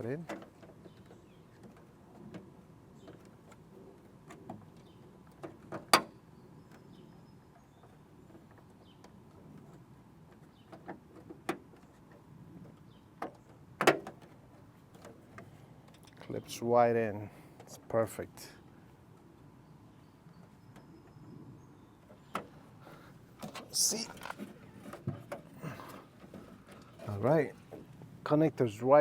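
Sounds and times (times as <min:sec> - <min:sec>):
plastic handling noise: 0:23.4 - 0:28.0.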